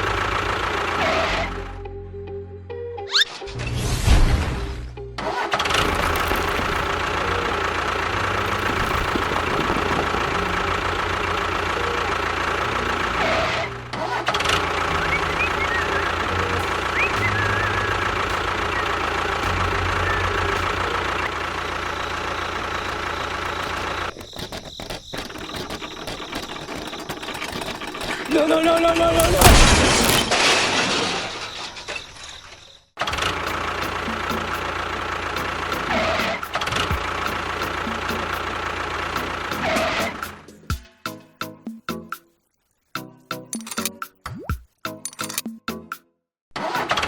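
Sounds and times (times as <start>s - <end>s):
engine chugging: 0.0s - 2.8s, 4.9s - 30.9s, 33.0s - 40.8s.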